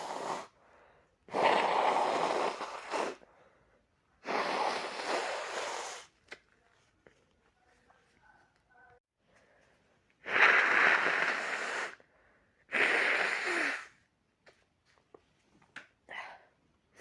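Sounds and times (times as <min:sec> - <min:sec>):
person blowing nose: 0:00.0 - 0:00.6, 0:01.3 - 0:03.3, 0:04.2 - 0:06.2, 0:10.2 - 0:12.1, 0:12.7 - 0:14.0.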